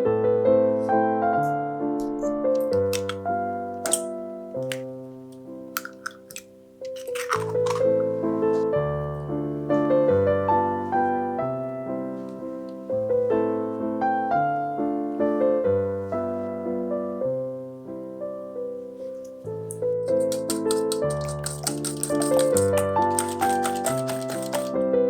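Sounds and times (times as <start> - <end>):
gentle piano melody: 7.8 - 21.0.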